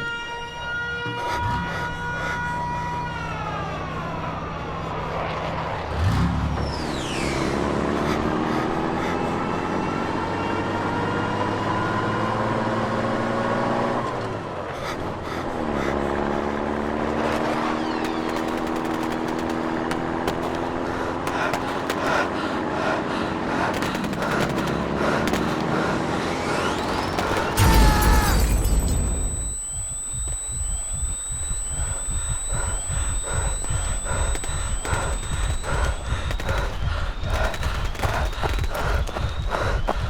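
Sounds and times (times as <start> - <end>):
vehicle engines droning: 0.0 - 40.0
falling whistle: 17.2 - 22.3, 26.2 - 40.0.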